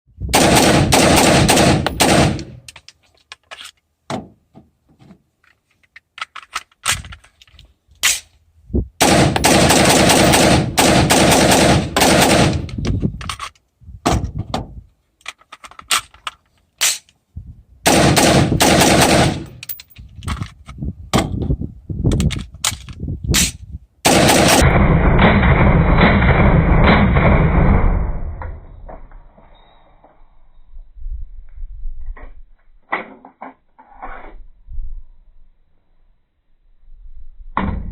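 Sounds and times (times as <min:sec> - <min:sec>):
rifle firing rapid shots: 0:00.3 - 0:02.6, 0:09.0 - 0:12.7, 0:17.9 - 0:19.6, 0:24.0 - 0:27.8
single sharp gunshots: 0:00.3 - 0:02.6, 0:09.0 - 0:12.7, 0:17.9 - 0:19.6.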